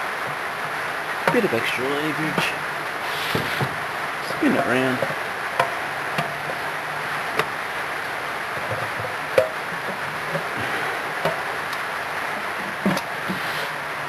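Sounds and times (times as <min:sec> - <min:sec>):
steady background hiss: 0:00.0 - 0:14.0.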